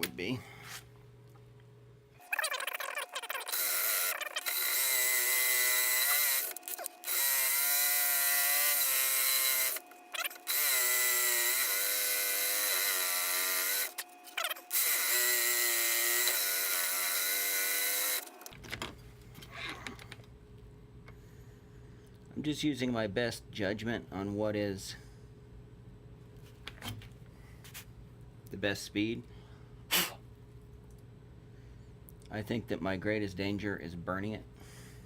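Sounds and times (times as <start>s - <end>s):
jigsaw cutting steel plate: 2.2s - 18.5s.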